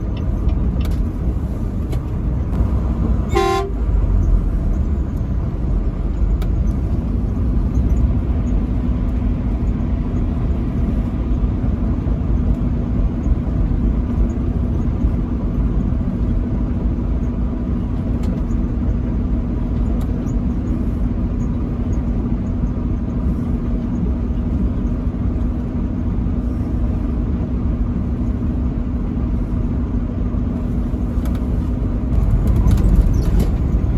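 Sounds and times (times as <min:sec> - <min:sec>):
road noise: 0:00.0 - 0:33.9
steady low hum: 0:00.0 - 0:33.9
truck engine rumble: 0:00.0 - 0:33.9
truck horn blast: 0:02.6 - 0:04.1.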